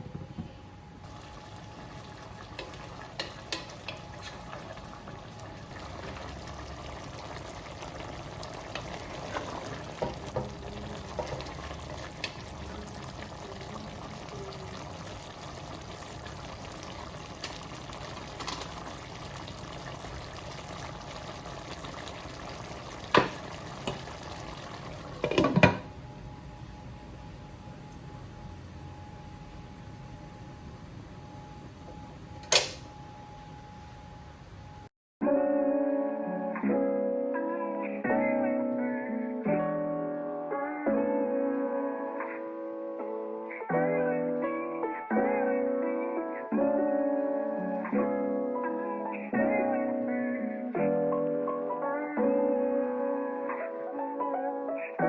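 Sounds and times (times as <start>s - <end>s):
curry bubbling in a pot: 1.0s - 25.9s.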